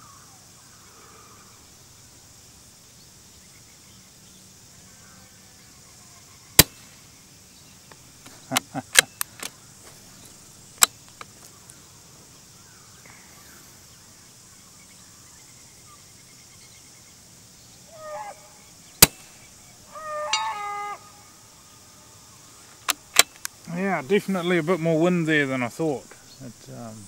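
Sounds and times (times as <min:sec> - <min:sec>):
rifle shot: 0:06.6 - 0:06.9, 0:19.0 - 0:19.4
short bird calls: 0:17.7 - 0:23.7.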